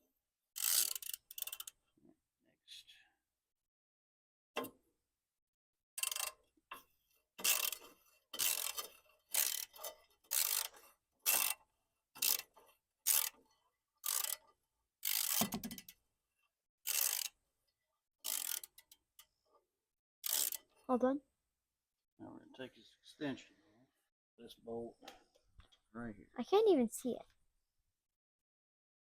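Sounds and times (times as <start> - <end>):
ratchet wrench clicking: 0.6 - 1.8, 6.0 - 6.4, 7.4 - 13.4, 14.0 - 16.0, 16.8 - 17.4, 18.2 - 19.3, 20.2 - 20.7.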